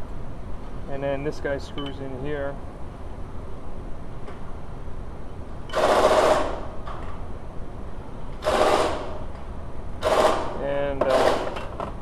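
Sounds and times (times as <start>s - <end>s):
rapid buzzing rattle: 5.7s - 6.7s, 8.4s - 9.2s, 10.0s - 11.6s.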